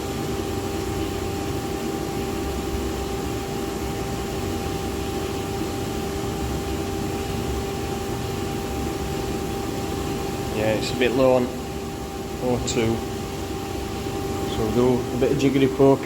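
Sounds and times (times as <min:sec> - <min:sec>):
boiler burner humming: 0:00.0 - 0:16.0.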